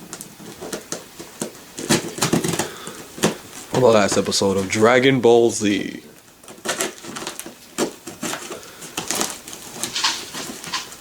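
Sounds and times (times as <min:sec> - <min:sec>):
knife cutting cardboard box: 0:00.4 - 0:04.7, 0:06.4 - 0:11.0.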